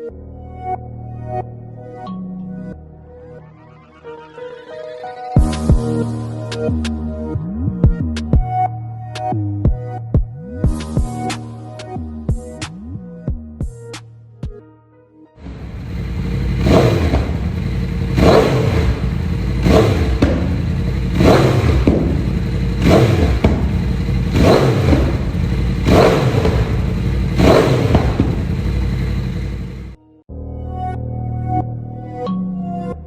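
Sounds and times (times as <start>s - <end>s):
motorcycle engine revving: 15.4s - 30.0s.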